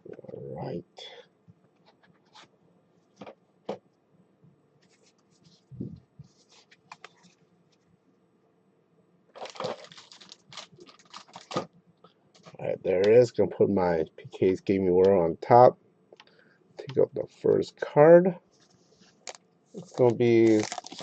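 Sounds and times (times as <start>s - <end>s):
foil wrapper crinkling: 9.3s - 11.7s, 19.2s - 21.0s.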